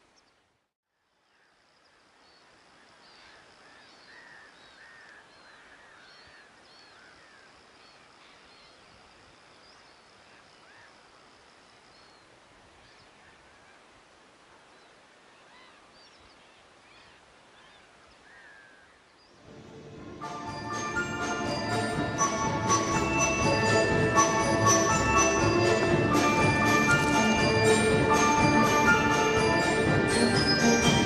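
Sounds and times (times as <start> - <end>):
small birds chirping: 1.2 - 13.8.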